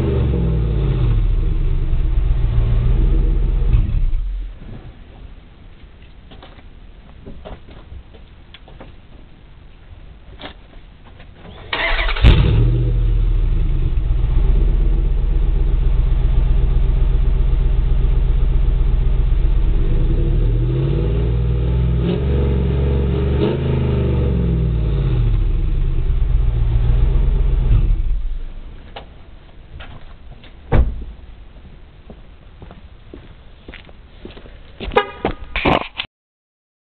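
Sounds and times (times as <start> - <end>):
car engine idling and revving: 0.0 - 4.6, 11.8 - 28.8
engine starter cranking: 11.5 - 12.5.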